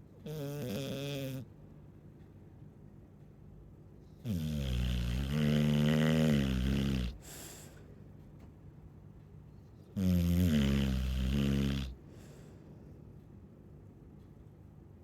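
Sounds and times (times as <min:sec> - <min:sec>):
dog snoring: 0:00.2 - 0:01.5, 0:04.2 - 0:07.6, 0:09.9 - 0:12.0.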